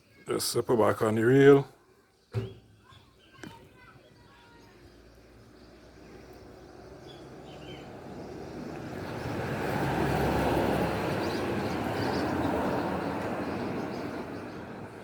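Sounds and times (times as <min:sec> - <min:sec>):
vehicle noise: 0:05.4 - 0:15.0.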